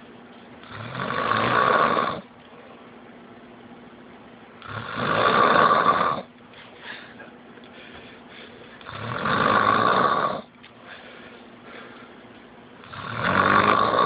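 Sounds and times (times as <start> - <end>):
person snoring: 0.6 - 2.3, 4.6 - 6.3, 8.8 - 10.5, 12.8 - 14.0.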